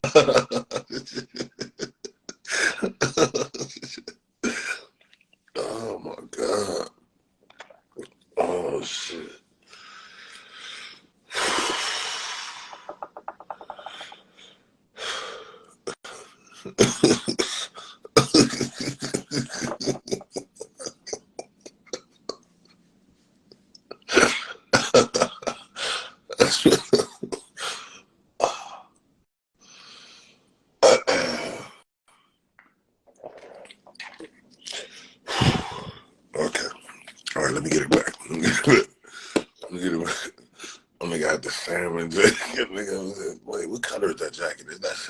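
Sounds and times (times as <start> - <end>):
man laughing: 0.0 - 4.8, 16.7 - 22.0, 23.9 - 25.7, 26.3 - 27.6, 34.8 - 36.7, 37.4 - 38.8, 39.7 - 40.3, 41.0 - 45.0
man coughing: 16.7 - 21.2.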